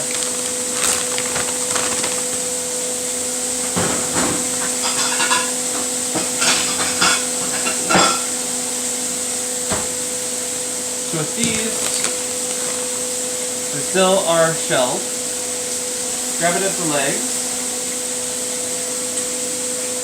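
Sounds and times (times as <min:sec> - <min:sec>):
bacon sizzling in a frying pan: 0:00.0 - 0:20.0
kitchen handling clicks and knocks: 0:03.7 - 0:08.3.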